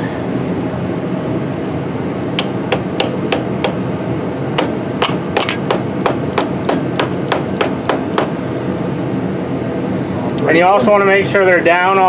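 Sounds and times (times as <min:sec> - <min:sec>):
steady background noise: 0:00.0 - 0:12.0
hammer tapping metal: 0:02.4 - 0:03.8, 0:04.6 - 0:08.3.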